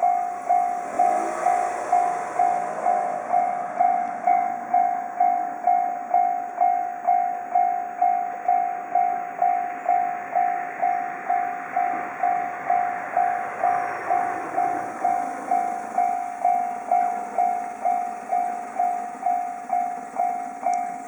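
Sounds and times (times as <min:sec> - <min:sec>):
steady rushing noise: 0:00.0 - 0:06.2
railroad crossing warning bell: 0:00.0 - 0:21.0.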